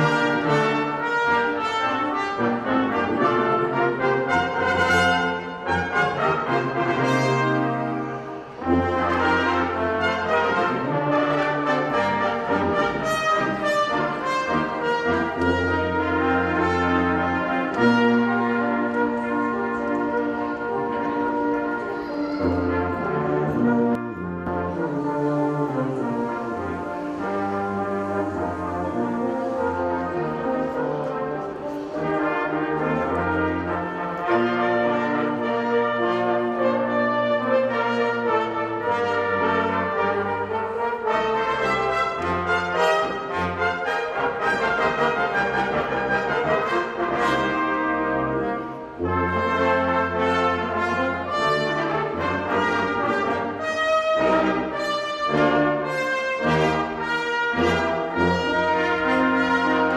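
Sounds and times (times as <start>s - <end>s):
brass ensemble playing chords: 0.0s - 59.9s.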